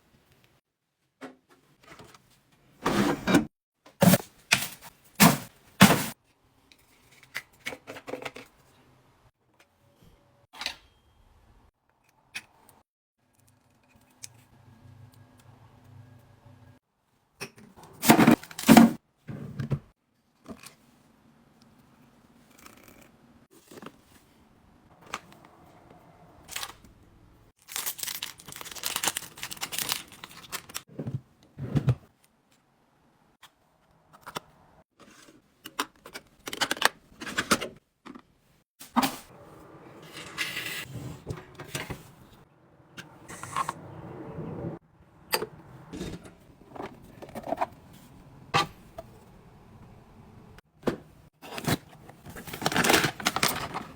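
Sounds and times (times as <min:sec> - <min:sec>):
packaging rustling and tearing: 0:27.6 - 0:30.8, 0:51.5 - 0:53.9.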